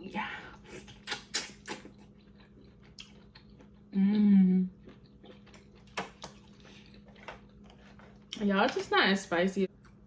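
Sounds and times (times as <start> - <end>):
person humming briefly: 4.0 - 4.7.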